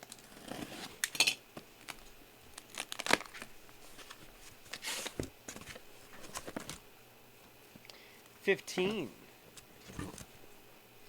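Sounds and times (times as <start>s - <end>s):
plastic wrap tearing: 1.8s - 3.6s.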